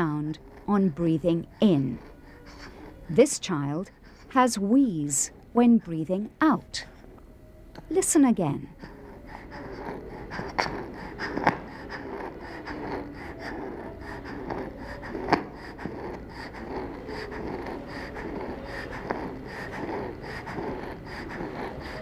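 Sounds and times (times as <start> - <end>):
child wheezing breaths: 1.3 - 3.2, 8.7 - 22.0.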